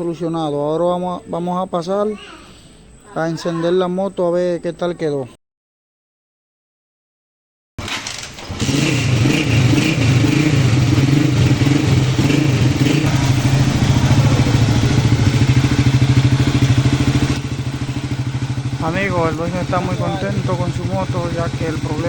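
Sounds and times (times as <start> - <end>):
motorcycle engine running: 8.4 - 22.0.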